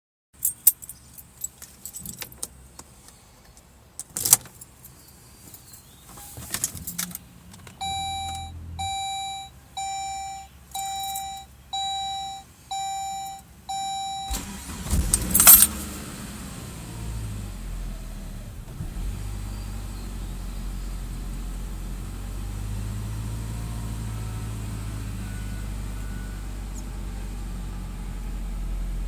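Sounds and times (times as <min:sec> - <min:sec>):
keys jingling: 0:00.4 - 0:02.5, 0:10.0 - 0:11.5, 0:15.1 - 0:15.8
car engine cranking and starting: 0:05.5 - 0:29.0
car warning chime: 0:07.8 - 0:14.8, 0:25.2 - 0:26.5.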